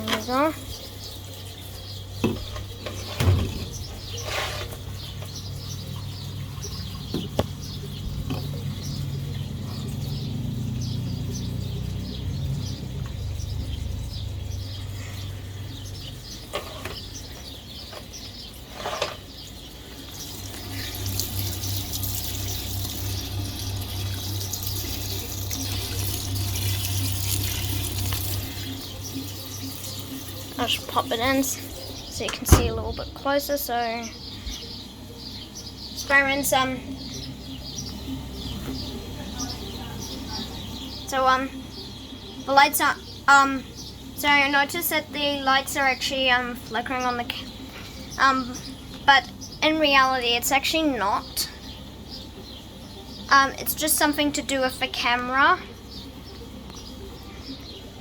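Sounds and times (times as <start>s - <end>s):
washing machine motor hum: 0.0s - 44.5s
water spraying into washing drum: 20.0s - 33.2s.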